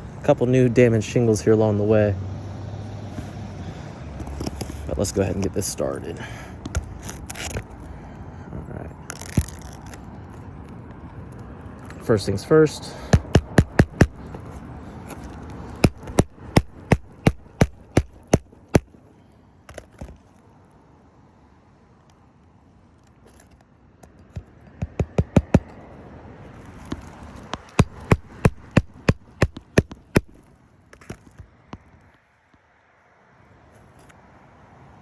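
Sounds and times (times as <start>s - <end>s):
hammer striking roof shingles: 13.1s - 14.2s, 15.8s - 18.9s, 24.4s - 25.7s, 27.6s - 30.4s.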